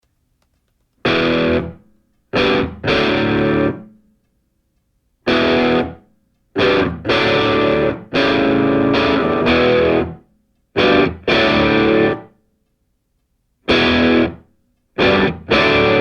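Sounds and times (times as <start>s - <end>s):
distorted electric guitar chords: 1.0s - 1.8s, 2.4s - 3.9s, 5.3s - 6.0s, 6.6s - 10.2s, 10.8s - 12.3s, 13.7s - 14.4s, 15.0s - 16.0s.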